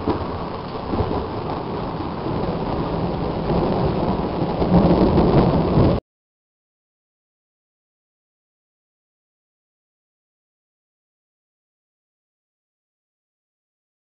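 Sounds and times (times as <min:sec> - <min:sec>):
steady rain: 0:00.0 - 0:06.0
thunder rumbling: 0:00.0 - 0:06.0.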